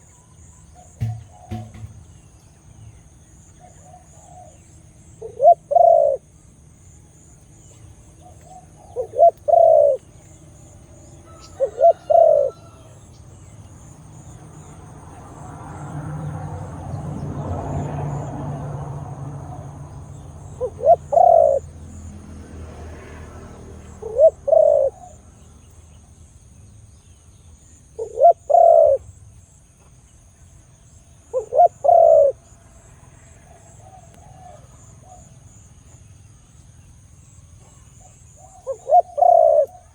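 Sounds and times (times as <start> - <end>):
dove cooing: 0.8 - 2.1, 3.6 - 4.6, 5.2 - 6.3, 8.2 - 10.1, 11.2 - 12.8, 20.4 - 21.7, 23.9 - 25.2, 28.0 - 29.1, 31.3 - 32.4, 33.5 - 35.3, 37.6 - 39.9.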